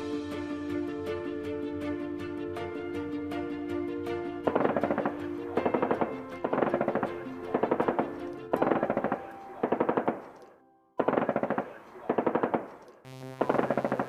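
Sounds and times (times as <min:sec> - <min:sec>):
music: 0:00.0 - 0:11.4, 0:13.1 - 0:14.0
machine-gun fire bursts: 0:08.6 - 0:10.4, 0:11.0 - 0:12.8, 0:13.4 - 0:14.0.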